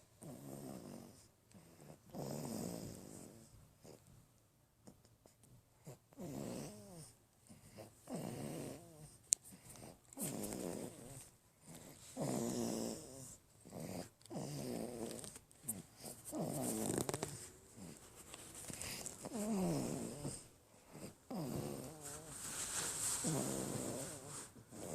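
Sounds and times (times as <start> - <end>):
baby snoring: 5.8 - 22.4, 23.1 - 24.9.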